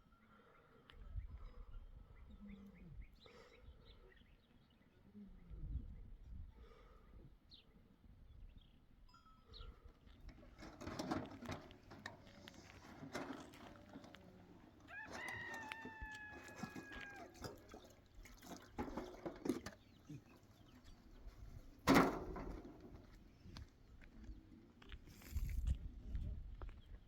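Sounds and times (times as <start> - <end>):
rooster crowing: 14.9 - 17.4.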